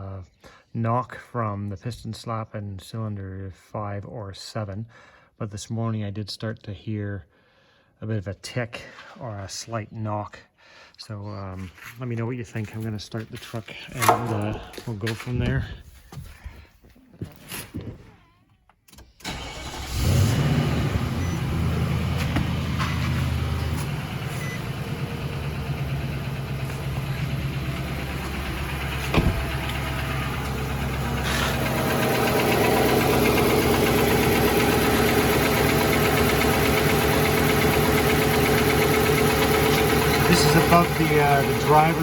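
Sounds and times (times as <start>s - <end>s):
truck engine starting and idling: 19.2s - 42.0s.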